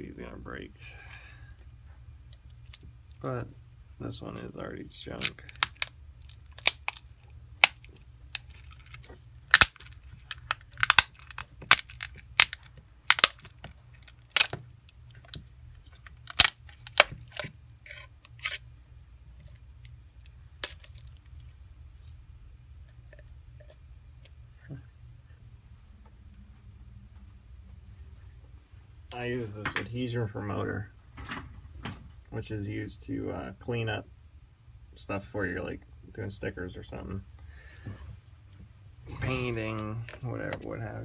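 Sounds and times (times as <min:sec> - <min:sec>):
low steady hum: 0:00.0 - 0:41.0
phone screen cracking and snapping: 0:05.2 - 0:17.6, 0:20.6 - 0:21.2.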